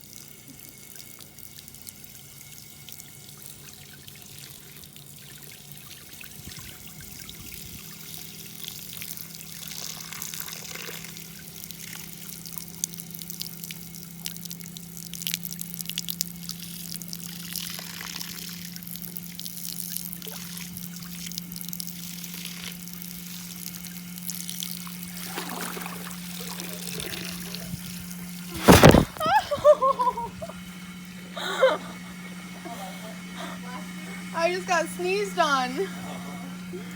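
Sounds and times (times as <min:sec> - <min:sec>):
water pouring and trickling: 0:00.0 - 0:29.0
steady low hum: 0:00.0 - 0:36.9
water splashes: 0:15.2 - 0:29.4.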